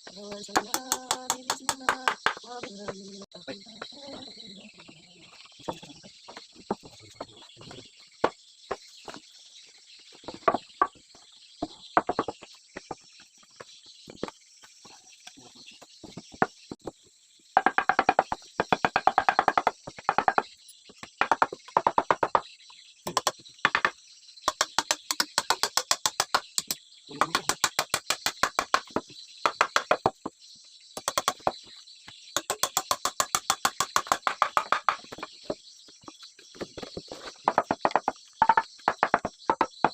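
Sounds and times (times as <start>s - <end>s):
crickets chirring: 10.3s - 39.9s
sharp knocks: 32.4s - 35.6s, 36.8s - 39.9s.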